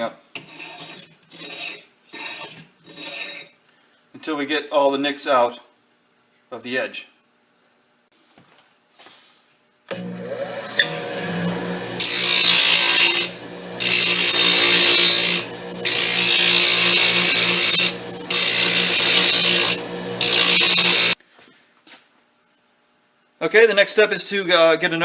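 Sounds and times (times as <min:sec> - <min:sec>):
chisel grinding on wheel: 0:00.4 - 0:03.5, 0:10.6 - 0:21.2
bench grinder motor hum: 0:09.9 - 0:21.2.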